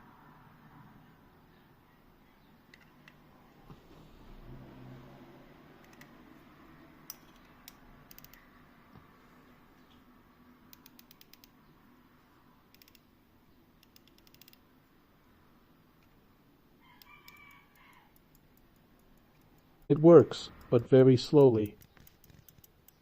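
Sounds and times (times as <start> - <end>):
pocket watch ticking: 7.1 - 8.4, 12.7 - 13.0, 13.8 - 14.6, 17.1 - 23.0.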